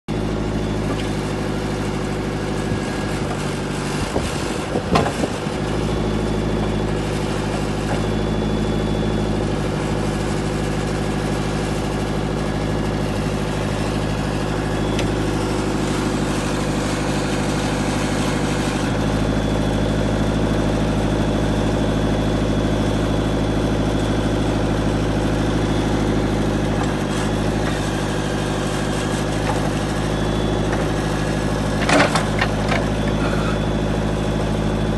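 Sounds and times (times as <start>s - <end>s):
diesel engine running: 0.1s - 34.9s
knocks and clatters: 31.8s - 33.2s.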